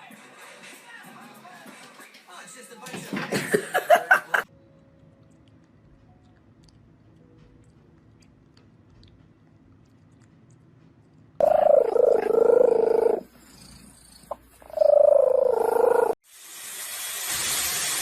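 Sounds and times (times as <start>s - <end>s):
cat yowling: 11.4s - 13.2s.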